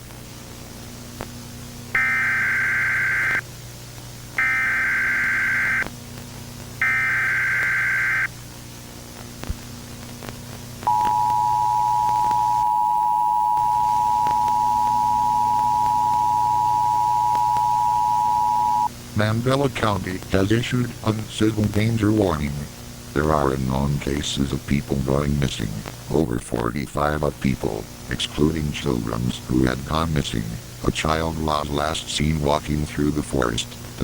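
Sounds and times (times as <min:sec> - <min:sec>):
steady low hum: 0:00.0 - 0:34.0
screeching digital data bursts: 0:02.0 - 0:03.4, 0:04.4 - 0:05.9, 0:06.8 - 0:08.3, 0:10.9 - 0:18.9
two-tone attention signal: 0:10.9 - 0:18.9.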